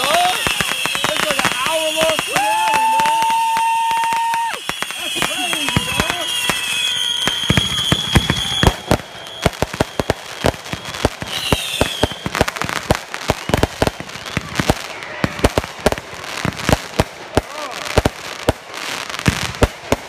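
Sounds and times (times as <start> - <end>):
whistling firework shell: 0.0 - 15.6
fireworks bangs and crackling: 0.0 - 20.0.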